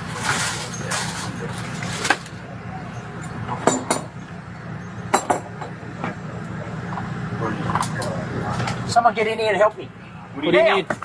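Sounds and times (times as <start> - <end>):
steady low hum: 0.0 - 11.0
metallic clinks and knocks: 3.2 - 4.2, 5.1 - 5.8.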